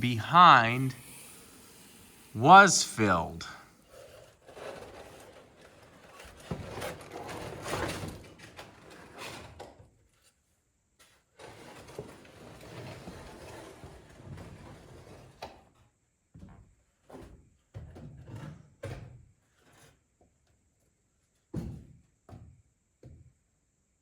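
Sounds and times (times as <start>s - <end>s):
wooden parts scraping and rustling: 3.9s - 9.6s.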